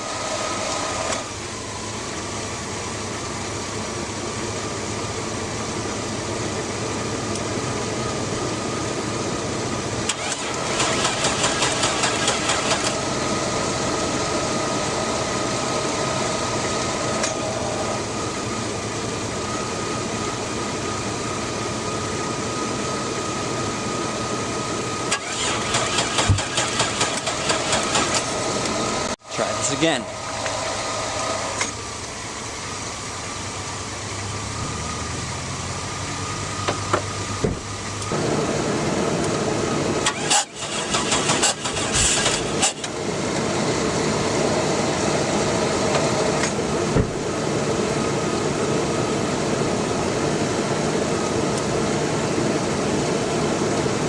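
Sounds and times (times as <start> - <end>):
car starter cranking: 10.0 - 13.0, 25.1 - 28.8, 40.0 - 43.0.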